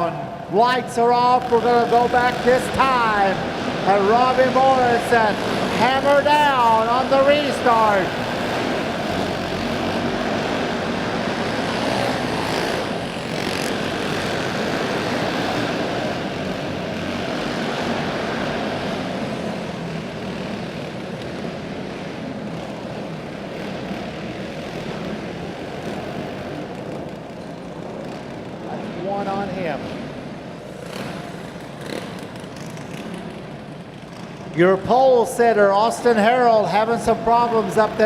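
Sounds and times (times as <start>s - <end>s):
kart passing close: 0.0s - 38.0s
racing kart engines: 0.0s - 38.0s.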